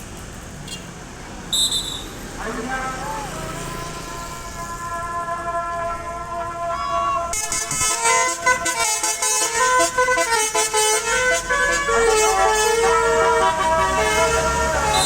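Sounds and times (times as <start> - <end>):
musical bus air horn: 3.9 - 15.0.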